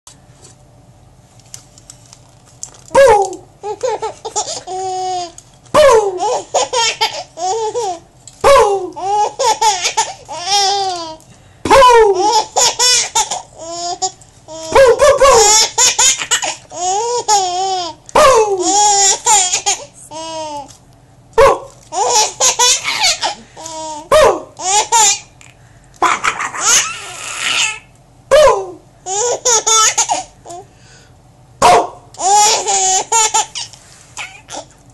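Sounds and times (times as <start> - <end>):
baby laughing: 3.0 - 20.7, 21.9 - 25.3, 26.0 - 27.9, 28.6 - 30.7, 32.2 - 34.7.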